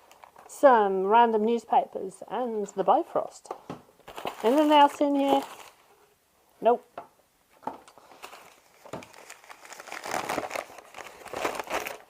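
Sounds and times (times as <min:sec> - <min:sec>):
newspaper crinkling and rustling: 0:00.0 - 0:00.6, 0:04.0 - 0:05.9, 0:07.9 - 0:12.0.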